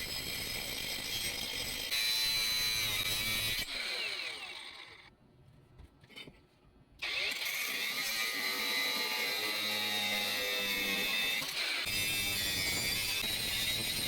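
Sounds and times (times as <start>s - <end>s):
angle grinder high whine: 7.0s - 14.0s.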